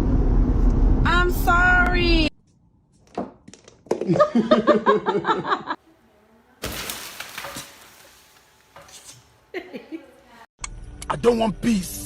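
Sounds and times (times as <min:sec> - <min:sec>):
something breaking and shattering: 0:06.6 - 0:09.4.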